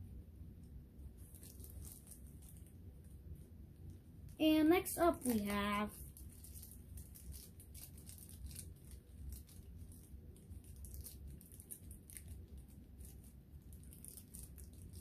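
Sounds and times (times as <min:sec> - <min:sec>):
low steady hum: 0:00.0 - 0:15.0
packaging crinkling and tearing: 0:01.2 - 0:02.8, 0:04.8 - 0:15.0.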